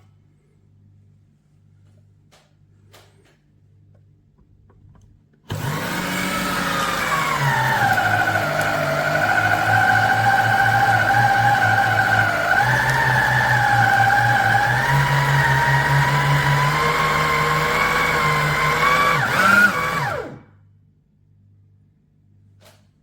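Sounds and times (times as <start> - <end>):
meat grinder motor whining: 5.5 - 20.5.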